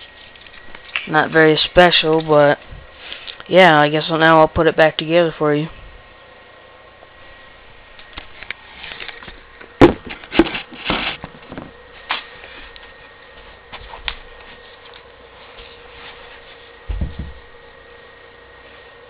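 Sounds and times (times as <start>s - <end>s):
dull thump: 16.8s - 17.4s.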